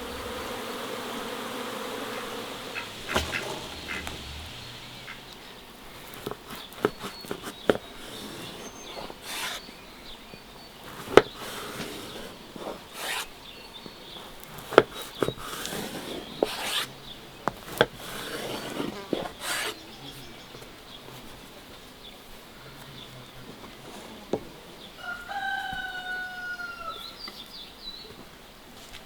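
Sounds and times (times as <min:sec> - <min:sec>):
brief swishing rubs: 0:02.2 - 0:05.6.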